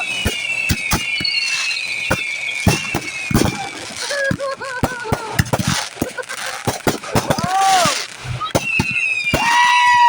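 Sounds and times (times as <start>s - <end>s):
high whistling tone: 0.0s - 4.3s, 8.2s - 10.0s
fireworks bangs: 0.0s - 10.0s.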